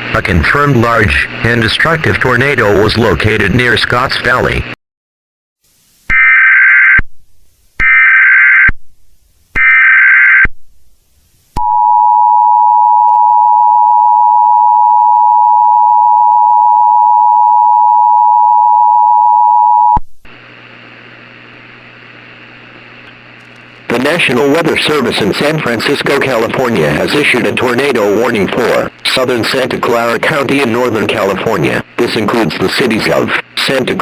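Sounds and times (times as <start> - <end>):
data header bursts: 0.0 - 4.8, 23.9 - 34.0
steady hiss with low hum: 0.0 - 4.8, 5.6 - 6.1, 7.3 - 7.8, 9.0 - 9.6, 10.7 - 11.6, 20.2 - 34.0.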